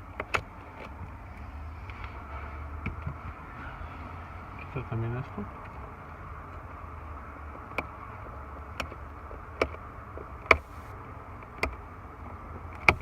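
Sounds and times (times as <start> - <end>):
electrical parts clicking and knocking: 7.5 - 10.8, 12.5 - 13.0.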